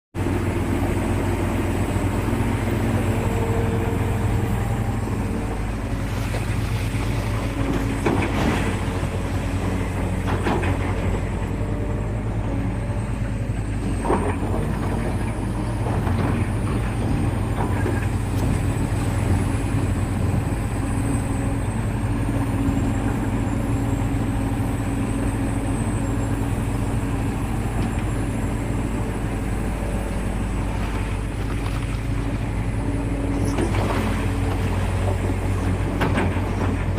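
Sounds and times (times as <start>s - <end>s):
diesel engine running under load: 0.2s - 36.9s.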